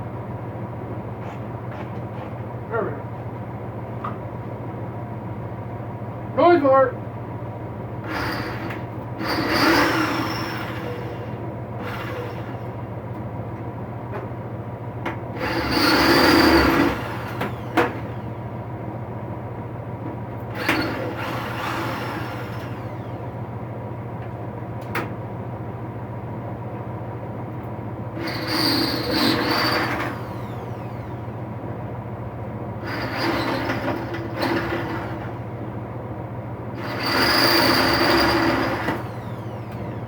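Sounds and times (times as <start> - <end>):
drill bit grinding into metal: 8.0 - 12.8, 15.4 - 18.4, 20.6 - 23.4, 28.2 - 31.4, 32.8 - 35.4, 36.8 - 40.0
power drill motor running: 8.0 - 13.0, 15.4 - 18.6, 20.5 - 23.6, 28.2 - 31.6, 32.8 - 35.6, 36.8 - 40.0.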